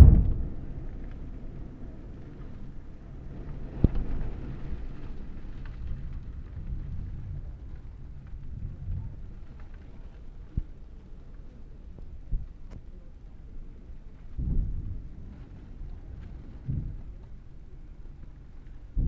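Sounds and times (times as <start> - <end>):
sharp thunder crack: 0.0 - 1.5
rumble of thunder: 0.0 - 12.6, 13.8 - 19.0
rain: 0.0 - 19.0.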